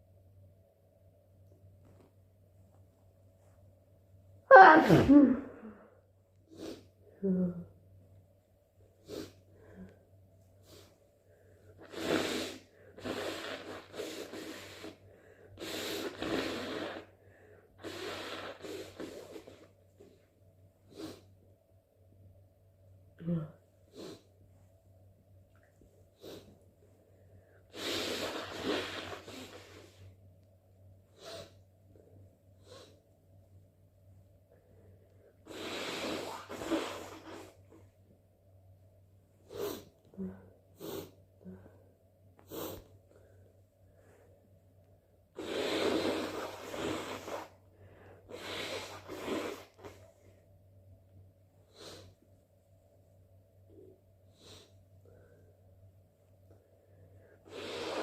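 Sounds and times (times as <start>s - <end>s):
person blowing nose: 6.5s - 6.8s, 9.0s - 9.4s, 11.8s - 15.0s, 15.6s - 17.2s, 17.8s - 19.7s, 20.9s - 21.2s, 23.9s - 24.2s, 26.2s - 26.5s, 27.7s - 30.0s, 31.1s - 31.6s, 32.6s - 32.9s, 35.4s - 37.8s, 39.5s - 39.9s, 40.8s - 41.2s, 42.5s - 42.9s, 45.4s - 47.6s, 48.3s - 50.1s, 51.7s - 52.1s, 57.4s - 58.0s
snort: 11.8s - 15.0s, 15.6s - 17.1s, 17.8s - 19.7s, 27.7s - 30.0s, 31.1s - 31.6s, 35.4s - 37.8s, 45.4s - 47.7s, 48.3s - 50.1s, 57.4s - 58.0s.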